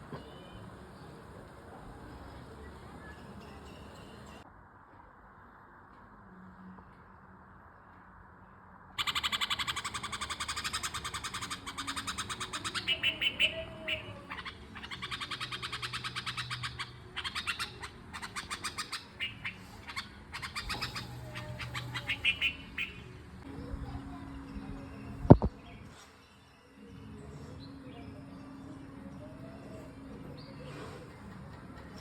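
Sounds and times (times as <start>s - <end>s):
bird harsh rapid chattering: 9.0s - 23.1s.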